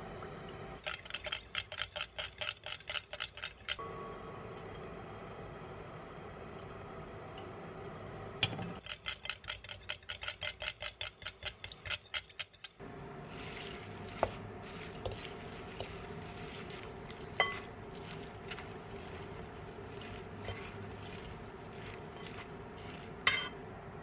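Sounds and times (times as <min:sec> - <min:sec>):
utensil whisking in a dish: 0:08.8 - 0:23.3.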